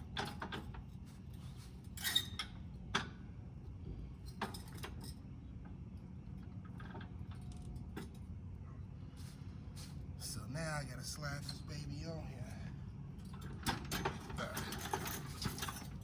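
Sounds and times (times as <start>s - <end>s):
low background rumble: 1.8s - 16.0s
metal tools clinking: 13.2s - 16.0s.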